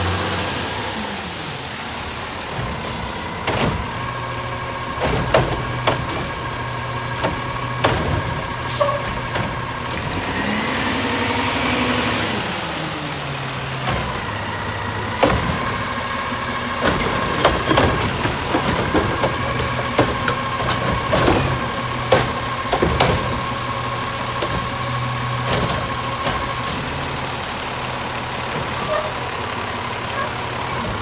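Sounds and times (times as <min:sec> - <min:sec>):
garbage truck engine humming: 0:00.0 - 0:31.0
metal clanks and knocks: 0:04.9 - 0:10.4, 0:15.0 - 0:16.0, 0:16.7 - 0:27.2.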